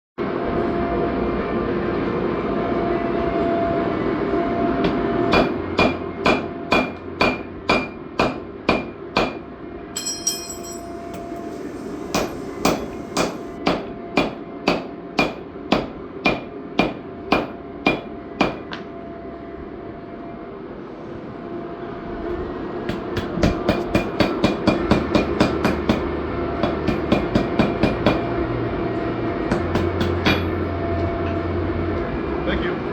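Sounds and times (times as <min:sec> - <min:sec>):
steady background hum: 0:00.2 - 0:32.9
hammer striking anvil: 0:04.8 - 0:09.4, 0:10.0 - 0:18.7, 0:22.9 - 0:28.3, 0:29.5 - 0:30.6.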